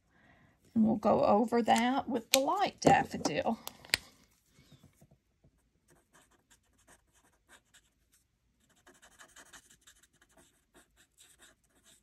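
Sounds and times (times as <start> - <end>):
marker scratching on card: 5.9 - 12.0.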